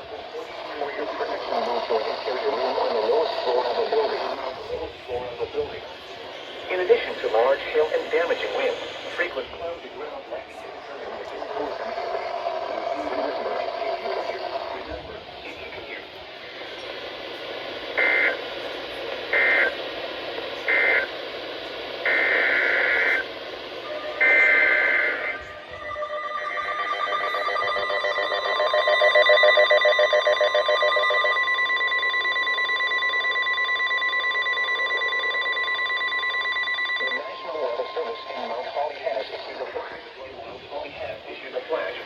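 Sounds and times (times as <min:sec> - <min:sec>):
digital data bursts: 0:18.0 - 0:18.6, 0:19.3 - 0:19.8, 0:22.0 - 0:23.4, 0:24.1 - 0:40.2
pulsing alert tone: 0:23.9 - 0:37.6.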